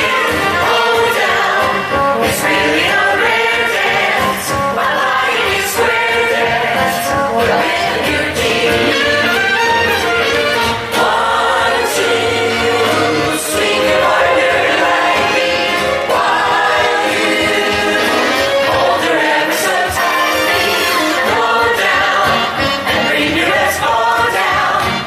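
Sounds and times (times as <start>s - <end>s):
band accompaniment: 0.0s - 25.0s
group of voices singing: 0.0s - 25.0s.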